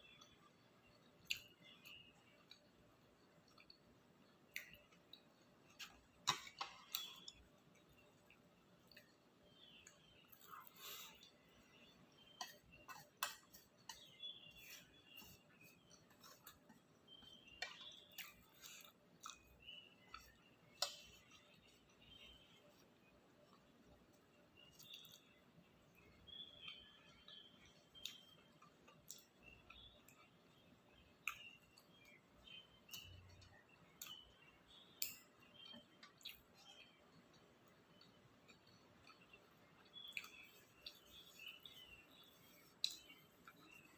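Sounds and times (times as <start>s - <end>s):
chewing mouth clicks and smacks: 1.2s - 9.2s, 17.6s - 21.6s, 24.7s - 25.4s, 27.7s - 30.3s, 35.0s - 41.8s, 42.7s - 43.9s.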